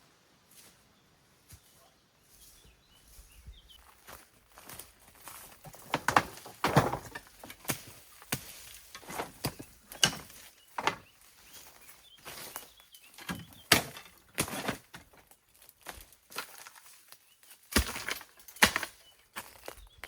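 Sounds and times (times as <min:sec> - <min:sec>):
branches cracking and thudding: 0:04.6 - 0:19.8.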